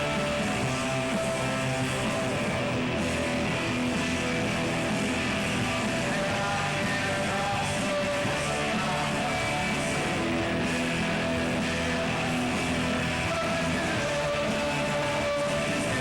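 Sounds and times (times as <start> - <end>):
electric guitar: 0.0 - 16.0
rock band playing live: 0.0 - 16.0.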